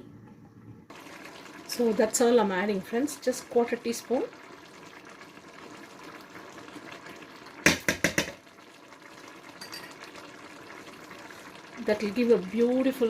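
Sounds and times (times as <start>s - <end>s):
food simmering in a pot: 0.8s - 13.0s
spoon clinking against a pot: 9.6s - 10.0s.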